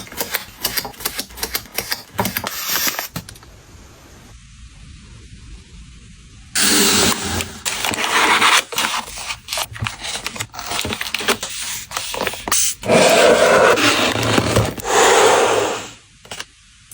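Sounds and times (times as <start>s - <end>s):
packing materials rustling: 7.4s - 15.3s.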